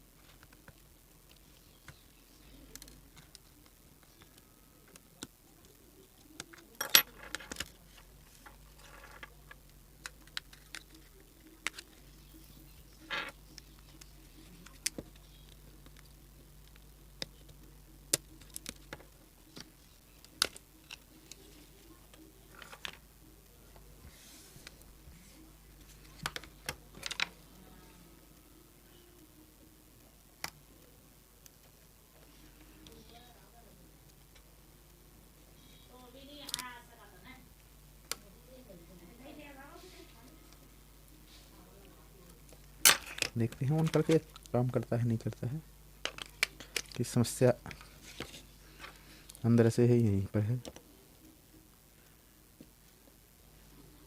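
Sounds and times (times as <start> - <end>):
plastic parts clicking and tapping: 42.8 - 44.6, 46.0 - 49.4.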